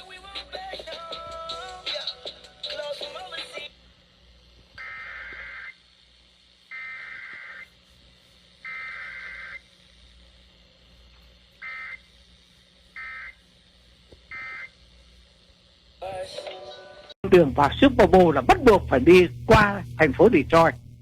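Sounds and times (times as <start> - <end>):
digital data tone bursts: 4.8 - 7.8, 8.6 - 9.9.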